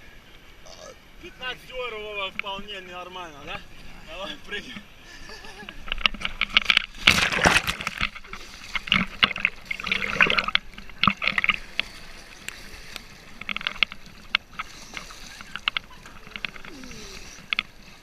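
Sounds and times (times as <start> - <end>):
water splashing and sloshing: 0.0 - 18.0
sharp knocks and clicks: 13.4 - 16.7.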